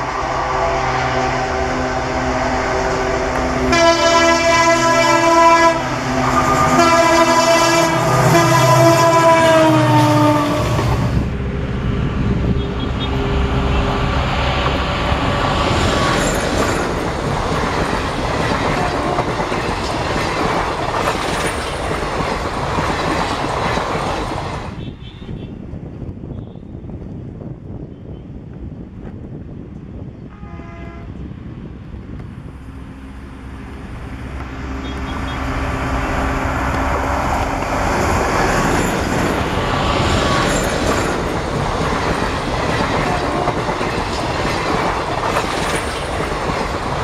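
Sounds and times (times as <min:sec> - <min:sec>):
train horn blasts: 0:00.0 - 0:11.1, 0:30.3 - 0:31.2, 0:34.4 - 0:37.2
train coaches rattling over rails: 0:02.3 - 0:24.8, 0:33.7 - 0:47.0
diesel locomotive engine running: 0:31.2 - 0:47.0.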